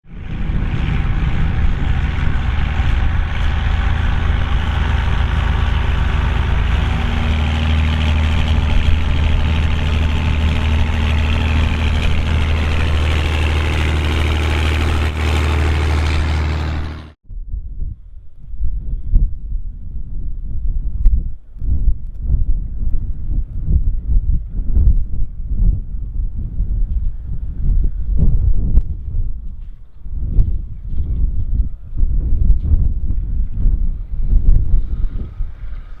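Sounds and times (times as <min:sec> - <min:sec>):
wind rumble on microphone: 0:00.0 - 0:36.0
tractor diesel engine running: 0:00.1 - 0:17.2.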